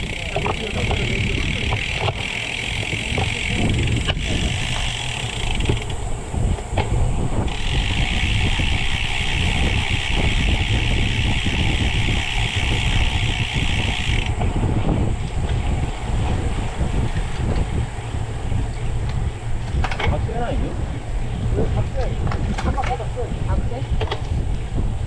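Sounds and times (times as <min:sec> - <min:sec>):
high-pitched buzz: 0:00.0 - 0:06.5, 0:07.2 - 0:15.0
bicycle road rumble: 0:00.0 - 0:25.0
wind buffeting microphone: 0:00.0 - 0:25.0.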